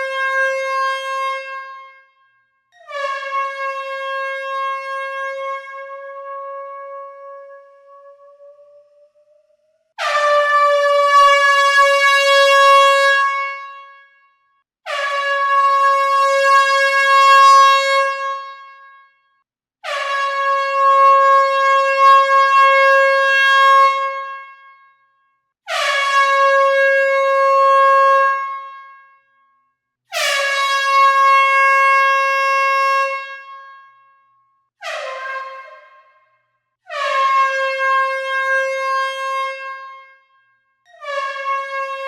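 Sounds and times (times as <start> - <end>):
air horn blasts: 0.0 - 8.3, 10.0 - 14.1, 34.8 - 36.2.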